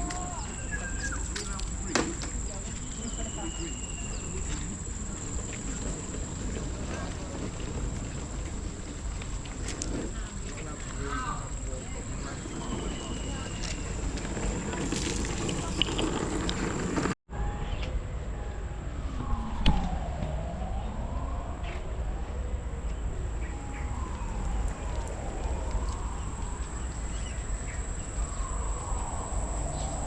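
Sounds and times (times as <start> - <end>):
wailing siren tone: 17.3 - 30.0
steady low rumble: 17.9 - 30.0.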